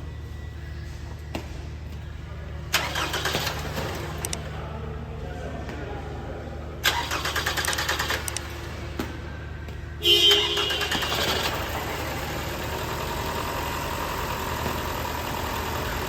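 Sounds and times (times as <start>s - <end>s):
starter motor cranking: 2.7s - 4.4s, 6.8s - 8.5s, 10.5s - 16.0s
car engine idling: 6.8s - 16.0s.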